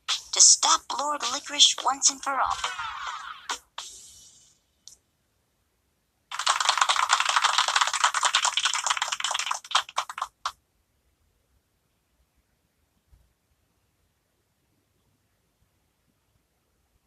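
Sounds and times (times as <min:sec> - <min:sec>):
rapid dense clatter of clicks: 0:06.3 - 0:10.6.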